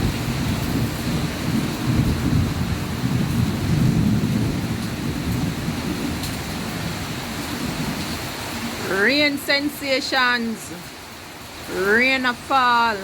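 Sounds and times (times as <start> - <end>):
low rumble of thunder: 0.0 - 8.4
rain falling: 0.0 - 13.0.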